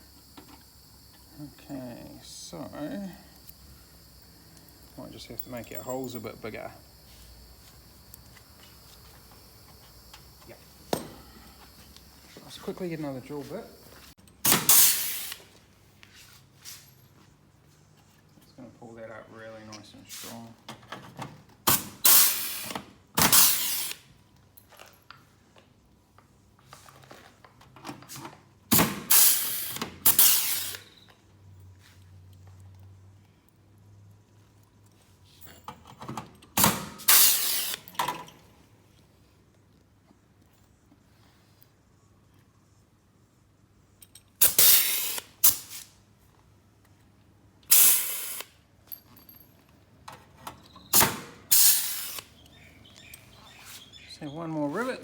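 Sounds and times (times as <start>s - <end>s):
air hiss: 10.8s - 15.5s, 21.8s - 24.0s, 29.0s - 31.0s, 36.6s - 37.9s, 44.4s - 46.0s, 47.7s - 48.6s, 50.9s - 52.3s
rivet gun bursts with snaps: 21.7s - 24.1s, 29.1s - 30.9s, 44.4s - 46.0s, 47.7s - 48.6s, 51.0s - 52.4s.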